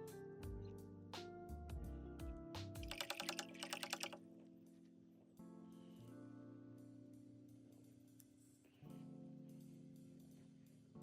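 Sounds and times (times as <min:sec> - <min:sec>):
light instrumental music: 0:00.0 - 0:11.0
fast dry clicks: 0:02.8 - 0:04.2.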